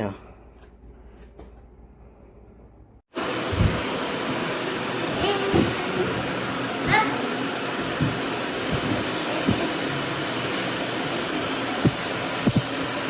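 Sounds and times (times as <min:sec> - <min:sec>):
vacuum cleaner running: 0:03.1 - 0:13.0.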